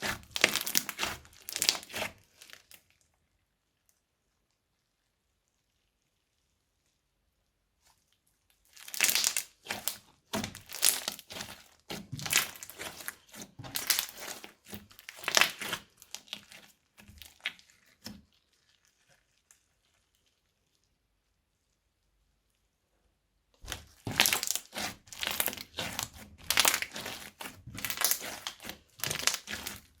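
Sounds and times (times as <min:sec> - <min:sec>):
crunchy slime being squeezed: 0:00.0 - 0:02.9, 0:08.7 - 0:20.4, 0:23.6 - 0:30.0.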